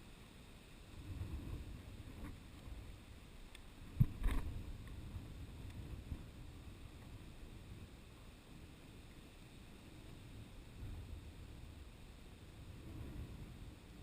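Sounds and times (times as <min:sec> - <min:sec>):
wind buffeting microphone: 0:00.9 - 0:03.0, 0:03.8 - 0:07.9, 0:10.6 - 0:14.0.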